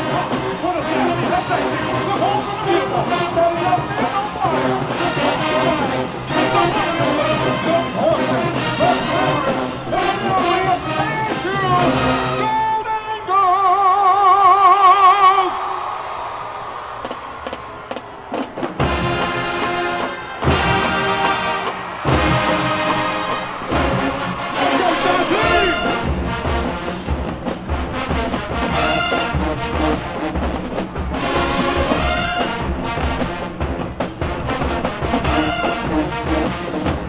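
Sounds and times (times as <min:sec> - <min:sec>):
marching band playing chords: 0:00.0 - 0:12.8, 0:16.9 - 0:37.0
drum strokes: 0:16.9 - 0:37.0.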